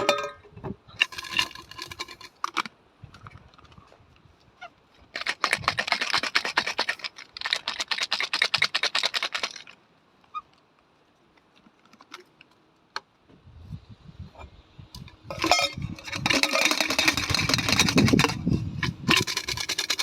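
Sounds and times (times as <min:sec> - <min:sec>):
rapid scratchy clicking: 0:05.1 - 0:09.8, 0:16.1 - 0:20.0.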